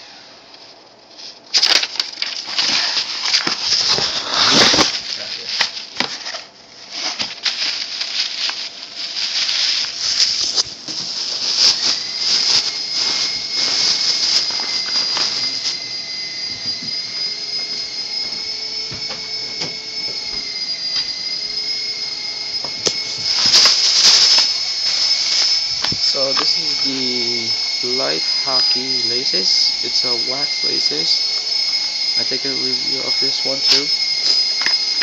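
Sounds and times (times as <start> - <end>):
packaging and gear rustling: 1.6 - 28.8, 32.8 - 35.0
high-pitched whine: 1.6 - 35.0
steady high hiss: 20.3 - 33.4.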